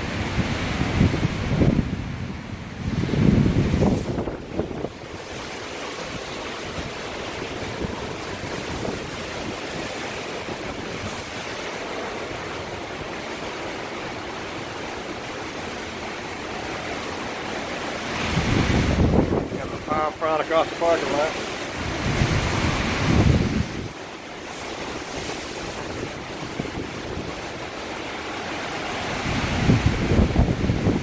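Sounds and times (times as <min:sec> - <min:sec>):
strong wind rushing: 0:00.0 - 0:05.4, 0:18.1 - 0:20.1, 0:21.1 - 0:24.0, 0:25.0 - 0:31.0
wind buffeting microphone: 0:00.0 - 0:20.2, 0:20.8 - 0:31.0.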